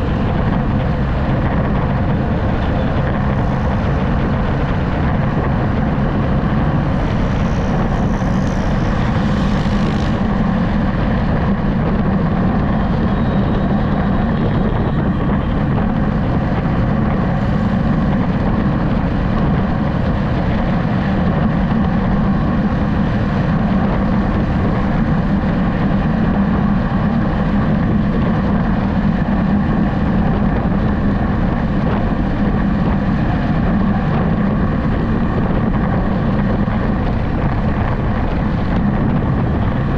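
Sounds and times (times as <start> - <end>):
road noise: 0.0 - 39.9
vehicle engine hum: 0.0 - 39.9.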